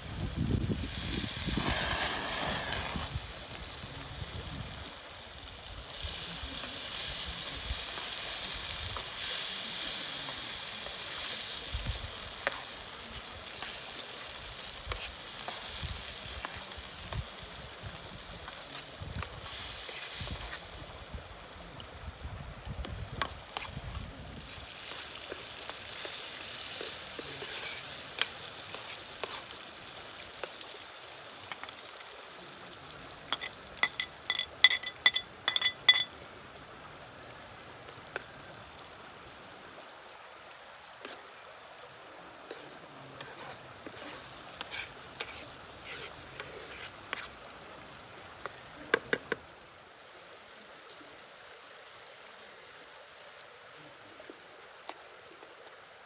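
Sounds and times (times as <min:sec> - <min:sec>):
steady hiss: 0:00.0 - 0:56.0
metal utensil stirring in pot: 0:43.2 - 0:47.3.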